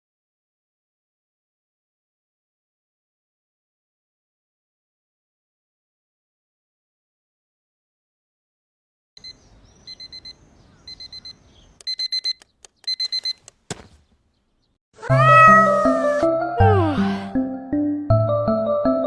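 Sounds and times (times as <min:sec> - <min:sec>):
alarm clock beeping: 0:09.2 - 0:13.4
cat meowing: 0:15.0 - 0:16.3
soft music: 0:15.0 - 0:19.0.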